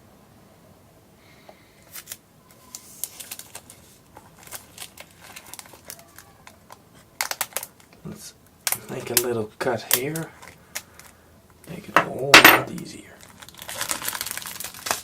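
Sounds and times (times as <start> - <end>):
packaging crinkling and clicking: 1.9 - 8.0, 9.9 - 11.2, 12.7 - 15.0.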